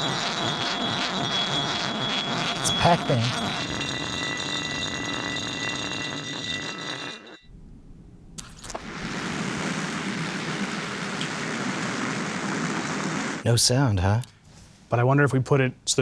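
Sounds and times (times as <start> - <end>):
metal singing on dry ice: 0.0 - 7.5
steady hiss: 8.4 - 14.0.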